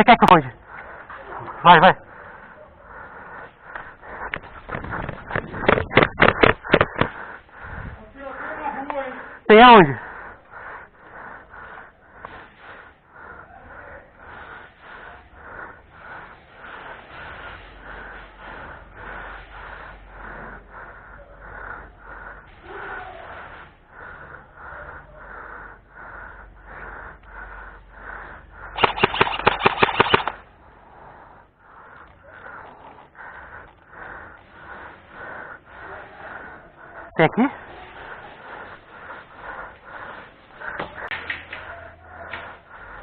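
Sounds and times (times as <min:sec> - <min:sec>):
heavy breathing: 0:00.0 - 0:43.0
airsoft gun rapid burst: 0:28.8 - 0:30.4.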